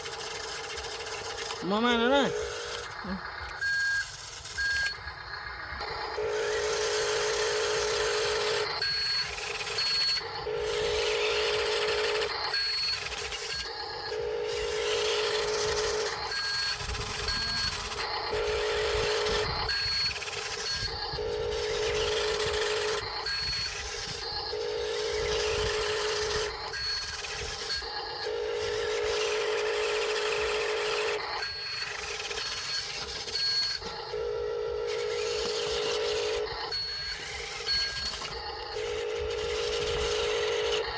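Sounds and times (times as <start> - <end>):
toy electric motors whirring: 0.0 - 40.9
short high electronic beeps: 16.3 - 17.8.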